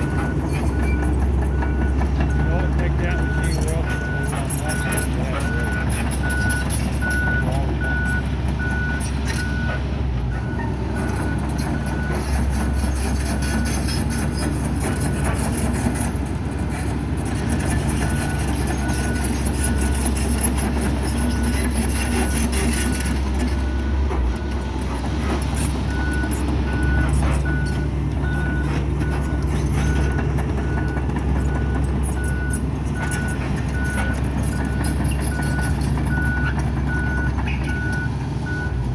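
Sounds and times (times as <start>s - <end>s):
excavator diesel engine running: 0.0s - 38.9s
travel alarm beeping: 1.6s - 9.7s, 25.9s - 38.8s.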